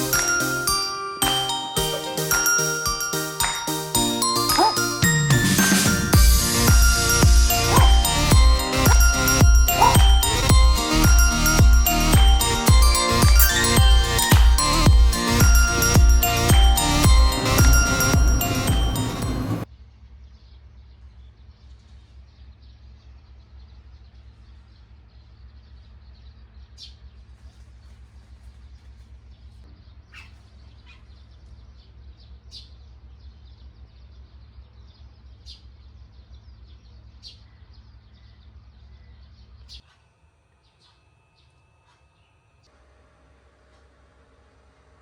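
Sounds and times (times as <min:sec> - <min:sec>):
birds chirping: 0:00.0 - 0:19.7, 0:29.2 - 0:42.6.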